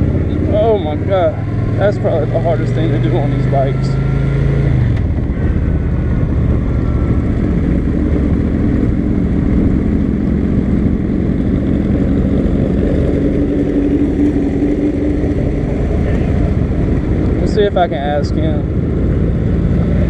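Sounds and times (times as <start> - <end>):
motorcycle engine drone: 0.0 - 20.0
wind rush on microphone: 4.7 - 20.0.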